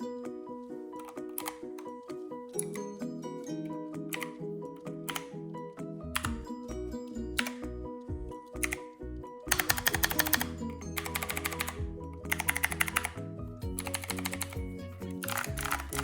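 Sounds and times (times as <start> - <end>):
background music with stepped melody: 0.0 - 16.0
mechanical keyboard typing: 1.0 - 1.7, 5.1 - 5.3, 6.2 - 6.4, 8.6 - 8.8, 9.5 - 16.0.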